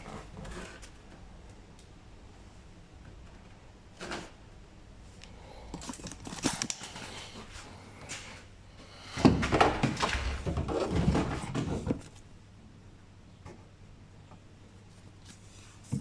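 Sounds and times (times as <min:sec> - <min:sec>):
car parts rattling and rubbing: 0:09.4 - 0:12.2.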